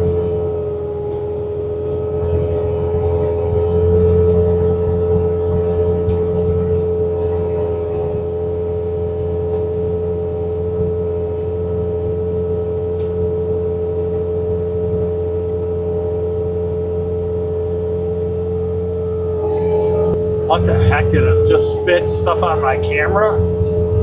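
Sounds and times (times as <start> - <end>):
high whine: 20.4 - 23.4.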